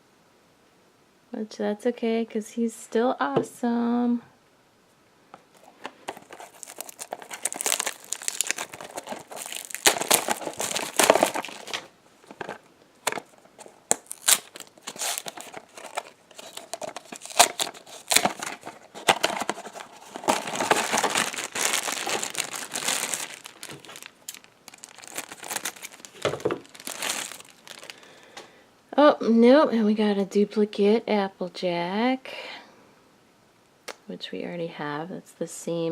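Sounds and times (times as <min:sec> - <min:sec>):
packaging crinkling and tearing: 0:05.5 - 0:28.2.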